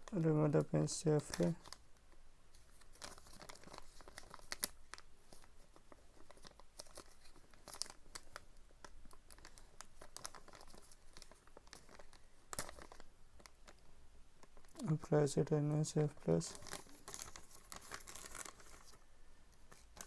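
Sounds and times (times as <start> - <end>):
packaging crinkling: 2.5 - 13.8, 15.9 - 20.0.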